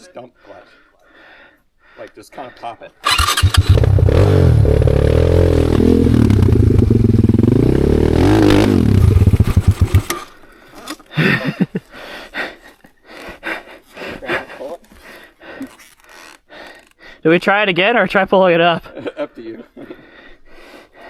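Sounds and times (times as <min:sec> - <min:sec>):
motorcycle engine revving: 0:03.0 - 0:10.3.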